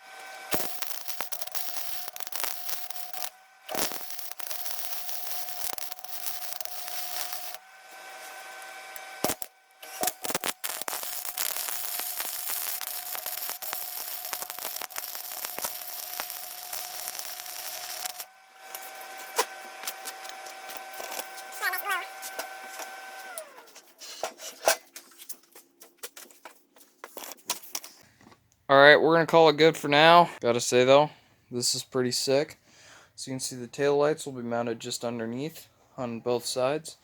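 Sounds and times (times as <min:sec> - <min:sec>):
welding arc crackling: 0:00.0 - 0:23.7.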